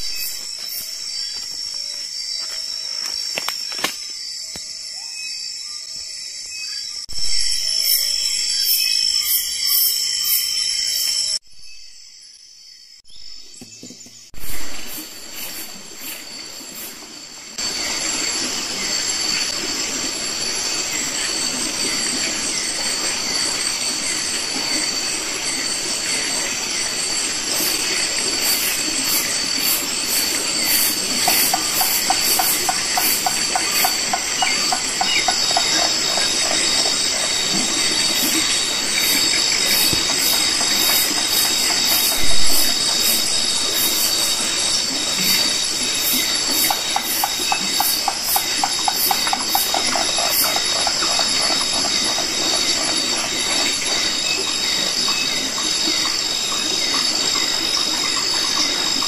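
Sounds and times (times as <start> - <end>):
insects droning: 0.0 - 59.0
rushing water: 14.6 - 59.0.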